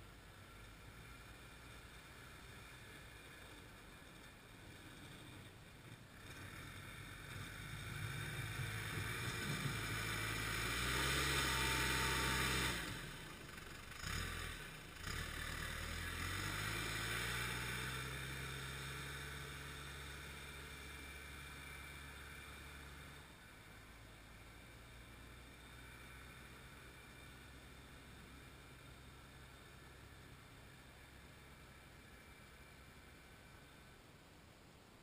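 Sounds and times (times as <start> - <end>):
loader diesel engine revving: 6.2 - 33.9.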